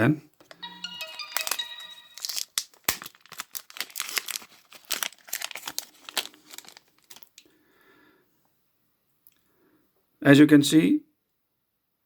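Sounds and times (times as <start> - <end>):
packaging crinkling and tearing: 1.0 - 7.5.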